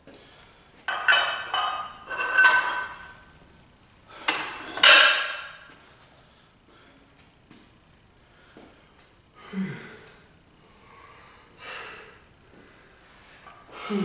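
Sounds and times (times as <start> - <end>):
metal gym weights clanking: 0.9 - 3.2, 4.3 - 5.7.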